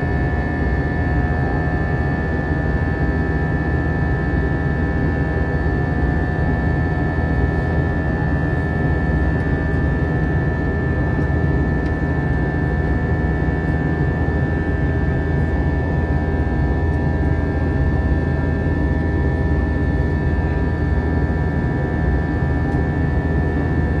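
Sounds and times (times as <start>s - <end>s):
jet engine cabin rumble: 0.0s - 24.0s.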